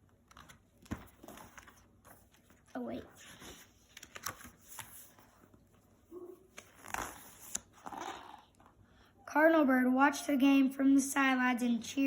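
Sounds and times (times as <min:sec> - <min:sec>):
paper pages rustling: 0:00.0 - 0:07.9.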